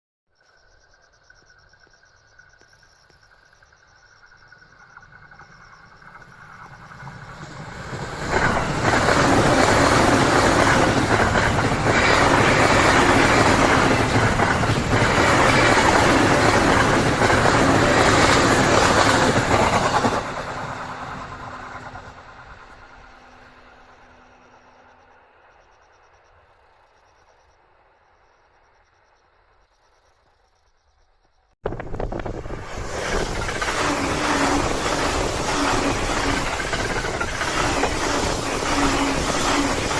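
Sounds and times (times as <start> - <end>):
electric train passing: 3.5 - 30.5, 31.7 - 39.9.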